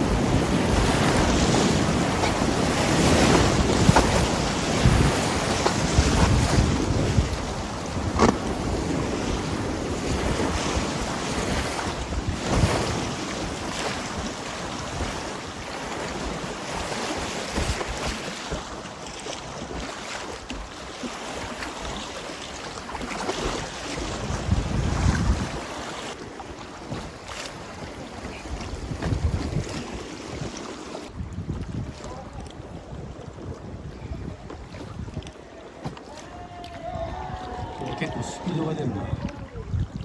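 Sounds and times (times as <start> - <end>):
wind buffeting microphone: 0.0 - 15.3, 23.9 - 25.7, 27.8 - 40.0.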